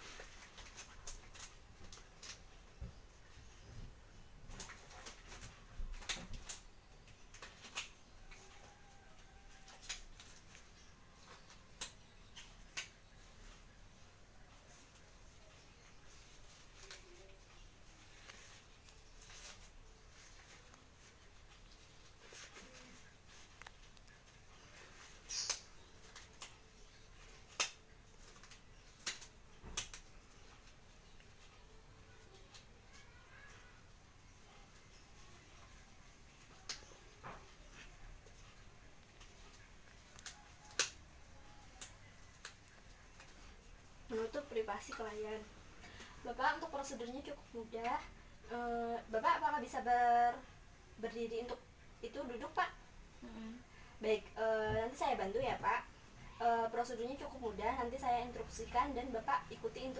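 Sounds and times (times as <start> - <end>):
small objects clicking and tapping: 36.4 - 43.5.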